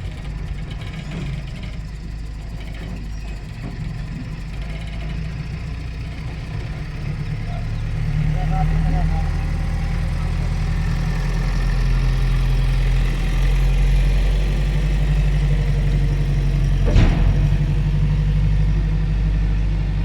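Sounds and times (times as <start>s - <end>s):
engine idling: 0.0s - 20.0s
sharp knock: 16.9s - 18.4s.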